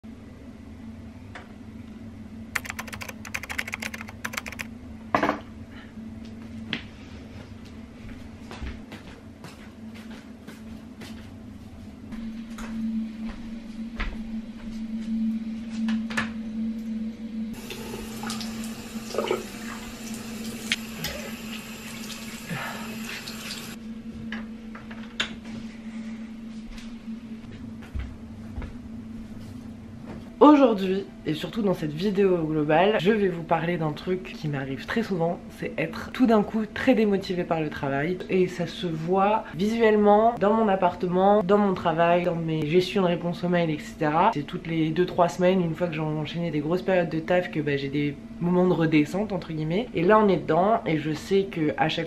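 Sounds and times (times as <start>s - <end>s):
water tap running: 17.6s - 23.8s
steady low hum: 23.7s - 51.0s.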